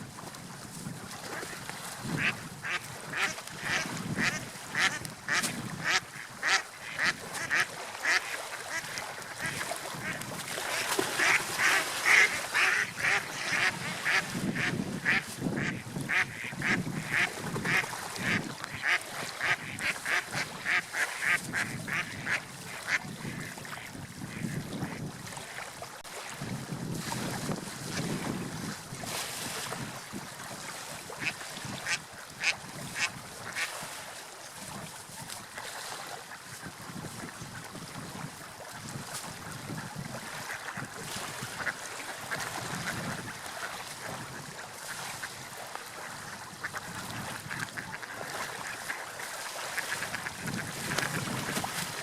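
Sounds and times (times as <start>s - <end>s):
water: 0.0s - 52.0s
wind: 0.0s - 52.0s
ducks quacking: 2.2s - 25.1s, 31.1s - 33.7s, 39.4s - 45.4s, 46.0s - 49.0s, 49.6s - 51.6s.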